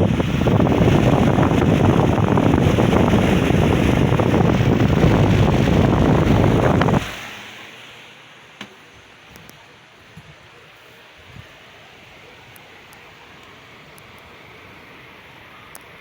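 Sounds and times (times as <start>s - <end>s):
electric fan blowing: 0.0s - 16.0s.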